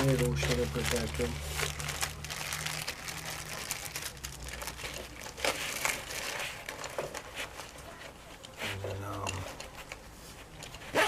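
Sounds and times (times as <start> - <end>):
plastic wrapping crinkling: 0.0 - 11.0
sharp plastic crackles: 0.0 - 11.0.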